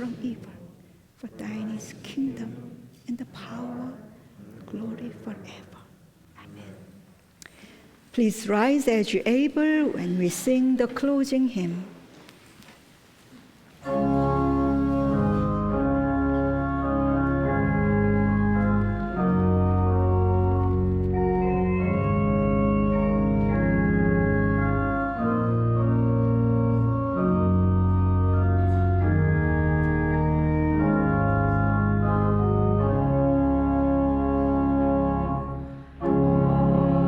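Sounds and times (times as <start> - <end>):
organ playing slow chords: 13.8 - 37.0.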